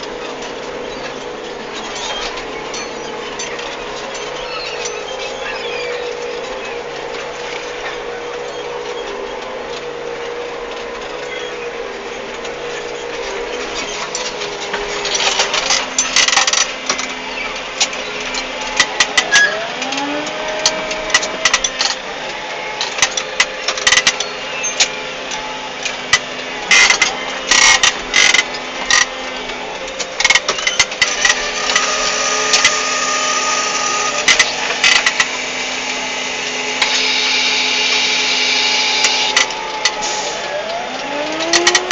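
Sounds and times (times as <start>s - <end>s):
tractor engine running: 0.0s - 41.9s.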